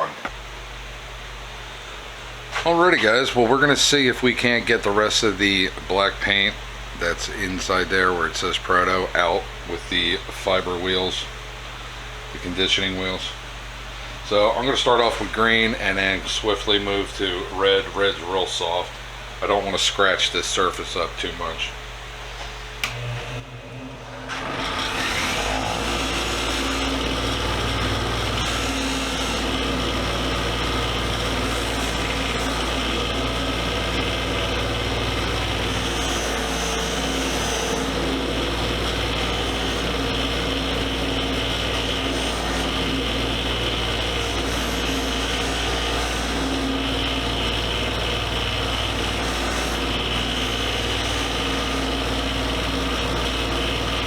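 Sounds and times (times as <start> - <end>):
power tool spinning wheel: 2.0 - 54.0
wheel rubbing metal: 23.3 - 54.0.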